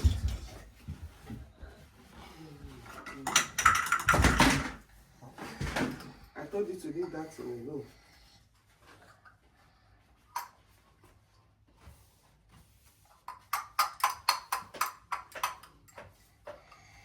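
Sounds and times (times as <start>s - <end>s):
hard objects tapping together: 3.0s - 4.8s, 13.2s - 16.6s.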